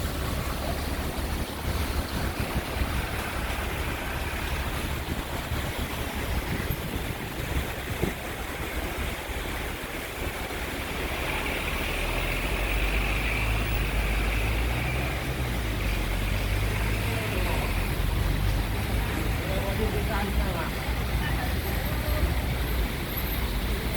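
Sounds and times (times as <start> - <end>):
wind buffeting microphone: 0.0 - 10.7
rain: 0.0 - 23.9
road traffic hum: 0.0 - 23.9.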